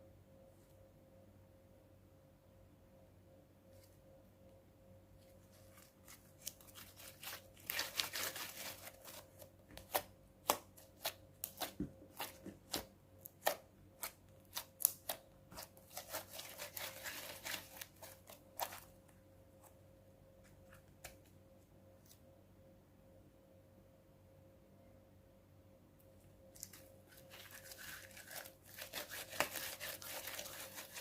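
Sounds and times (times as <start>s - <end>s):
wet crackling of slime: 26.5s - 31.0s.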